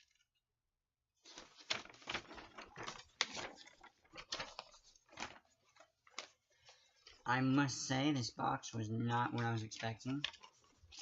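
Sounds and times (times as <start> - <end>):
paper or plastic crinkling: 1.2 - 7.3, 9.2 - 11.0.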